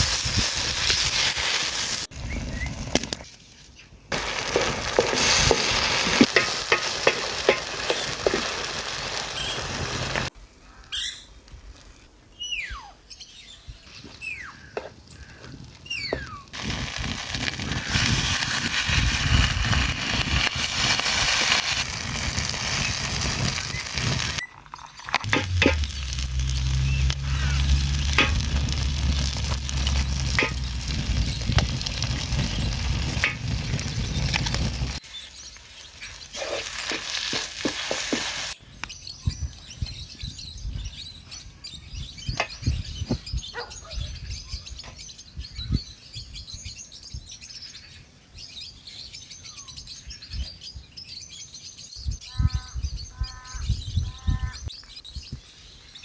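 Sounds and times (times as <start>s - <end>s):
food sizzling in a frying pan: 0.0s - 2.4s, 4.1s - 10.3s, 16.2s - 38.6s
utensil clicking and scraping: 4.2s - 10.3s, 16.7s - 35.0s, 35.9s - 38.6s.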